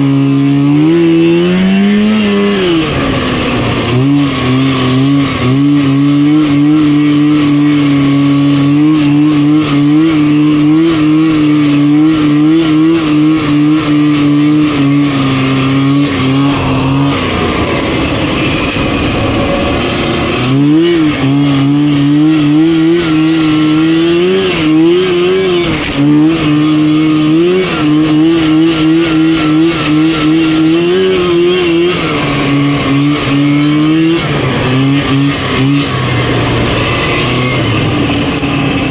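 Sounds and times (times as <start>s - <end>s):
snowmobile engine at high revs: 0.0s - 38.9s
rushing noise: 14.0s - 24.2s.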